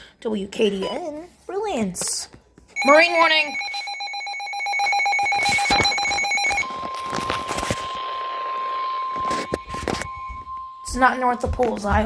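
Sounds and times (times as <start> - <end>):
long steady alert tone: 2.8 - 6.8
pulsing multi-pitch tone: 5.2 - 12.0.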